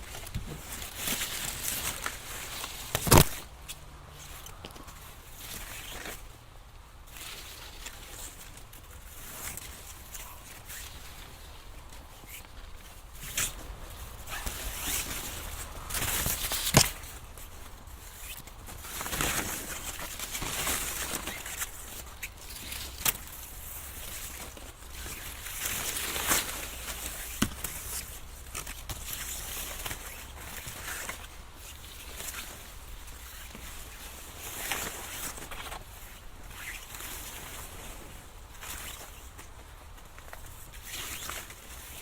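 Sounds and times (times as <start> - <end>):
corn ears snapping: 0.0 - 3.8, 15.9 - 17.2, 24.3 - 31.2
corn stalks and leaves rustling: 0.0 - 42.0.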